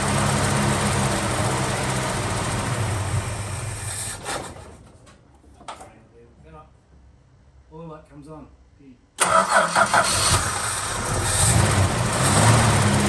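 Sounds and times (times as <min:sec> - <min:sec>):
car engine running: 0:00.0 - 0:04.2.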